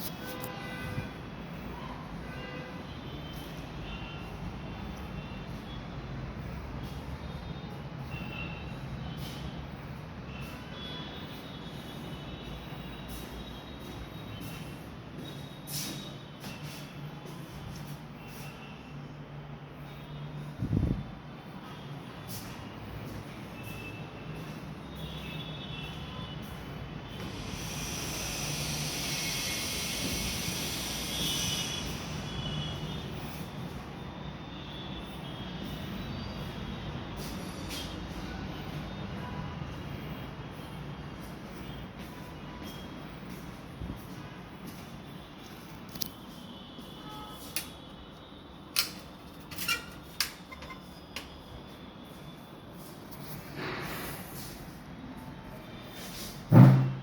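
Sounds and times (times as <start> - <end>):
machine hum and hiss: 23.8 - 42.6.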